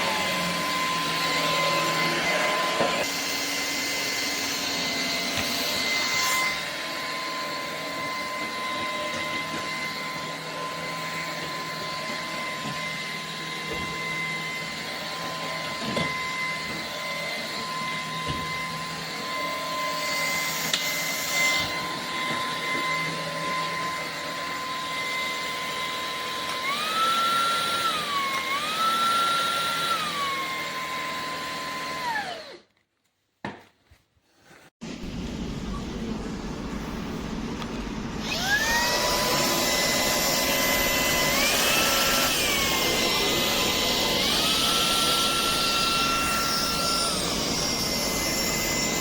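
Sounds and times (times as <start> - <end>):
stick vacuum whining: 0.0 - 32.8, 37.6 - 49.0.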